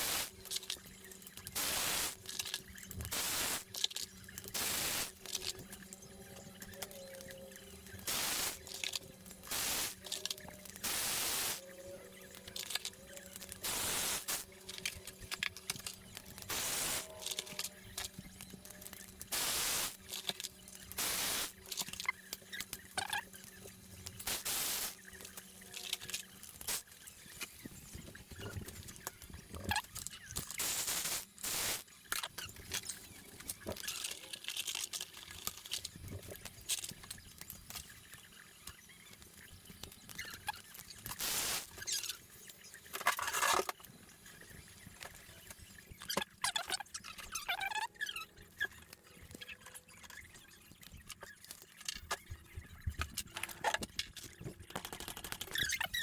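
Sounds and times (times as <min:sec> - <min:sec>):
metal tools clinking and scraping: 0:42.9 - 0:43.8.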